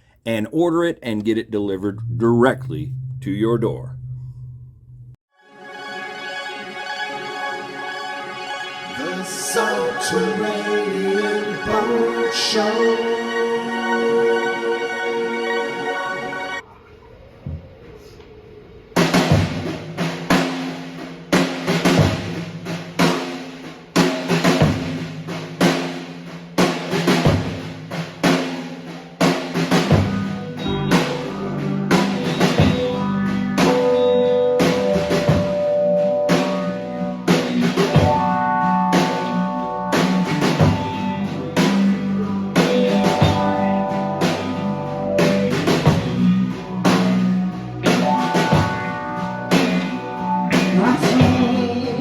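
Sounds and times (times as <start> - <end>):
bass: 0.0 - 5.2, 16.3 - 52.0
drum kit beat: 0.7 - 3.8, 19.0 - 52.0
synthesizer and guitar notes: 29.9 - 52.0.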